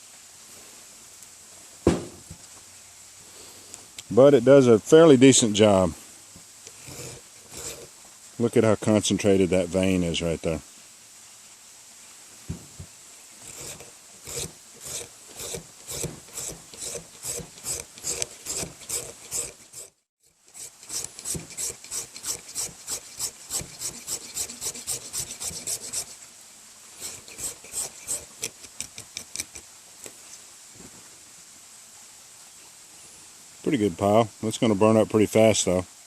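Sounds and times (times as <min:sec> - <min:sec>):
knife scraping wood: 0:06.7 - 0:07.9, 0:13.4 - 0:26.2, 0:27.0 - 0:29.6.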